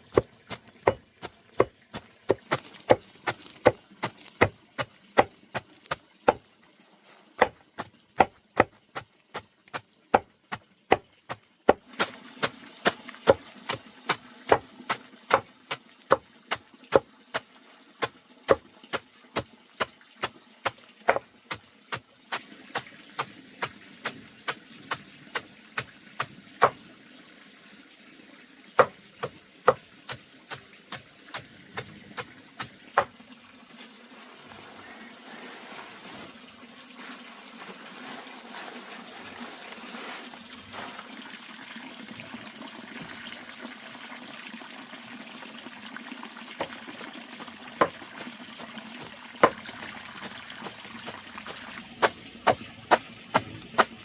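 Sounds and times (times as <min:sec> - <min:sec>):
chopping strokes: 0:00.0 - 0:06.4, 0:07.4 - 0:11.1, 0:11.7 - 0:26.8, 0:28.8 - 0:33.1, 0:49.0 - 0:54.0
running water: 0:00.0 - 0:54.0.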